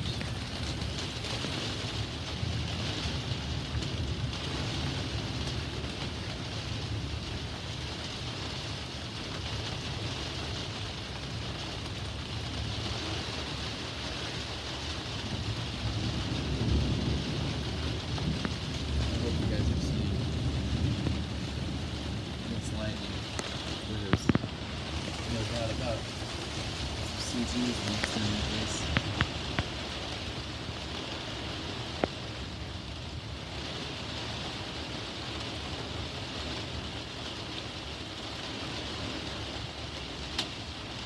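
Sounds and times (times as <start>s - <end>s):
thunder rumbling: 0.0s - 7.9s, 15.1s - 30.9s
heavy rain hissing: 0.0s - 41.0s.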